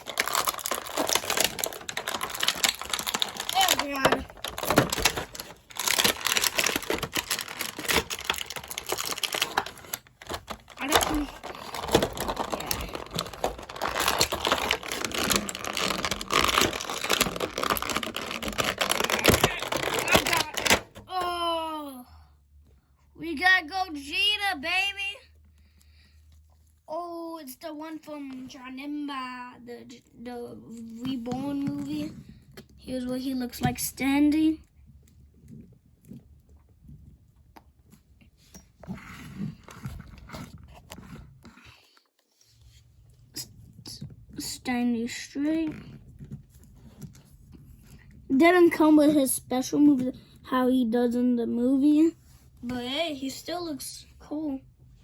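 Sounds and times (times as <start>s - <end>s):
toy packaging clicks and crinkles: 0.0s - 21.2s.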